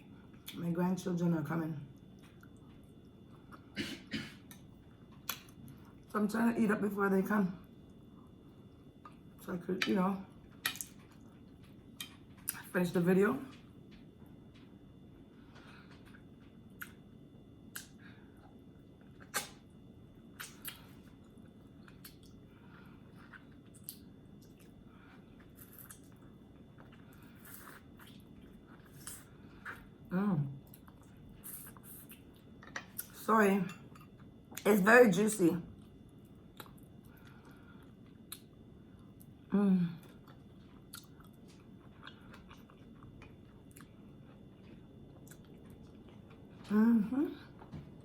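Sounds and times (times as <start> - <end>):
wet chewing and lip smacks: 10.6 - 12.6, 17.7 - 18.0, 19.0 - 19.7, 20.4 - 22.4, 23.2 - 24.7, 25.4 - 29.9, 35.8 - 38.6, 40.2 - 46.4.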